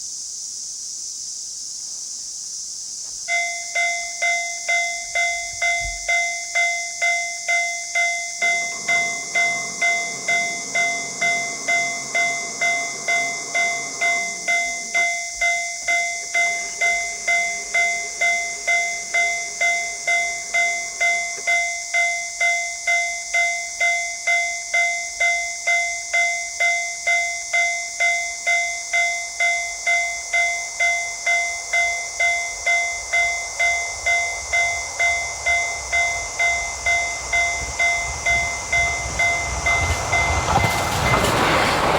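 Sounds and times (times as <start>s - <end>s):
steady high hiss: 0.0s - 41.9s
level crossing warning bell: 3.3s - 41.9s
low engine hum: 29.7s - 41.9s.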